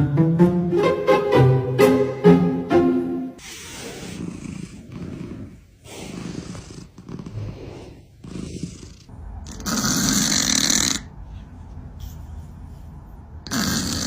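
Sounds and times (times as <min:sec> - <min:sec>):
cat snoring: 0:03.4 - 0:11.1, 0:13.4 - 0:14.0.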